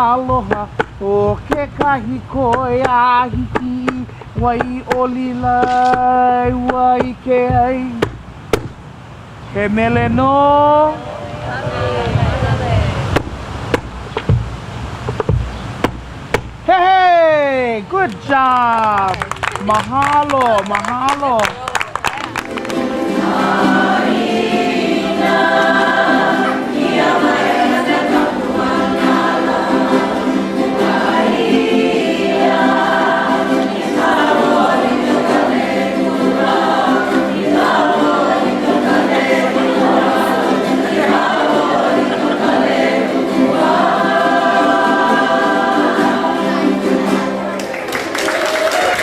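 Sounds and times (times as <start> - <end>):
group singing in harmony: 0.0 - 8.2, 10.8 - 13.3, 22.4 - 47.5.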